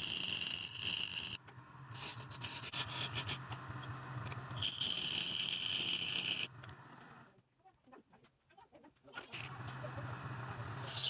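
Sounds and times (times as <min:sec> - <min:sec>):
tool scraping spinning wood: 0:00.0 - 0:07.2
wood lathe humming: 0:00.0 - 0:07.2.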